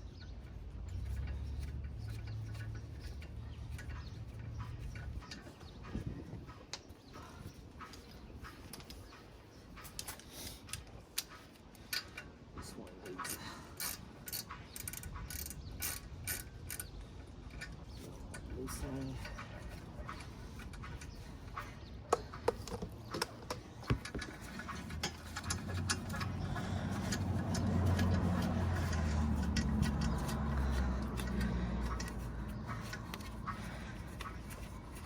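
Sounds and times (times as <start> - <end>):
hand tools clicking on metal: 13.0 - 35.0.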